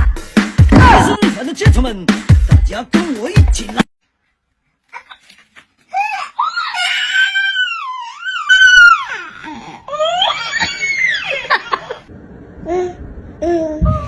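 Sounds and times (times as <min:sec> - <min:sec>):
baby crying: 0:05.9 - 0:11.5.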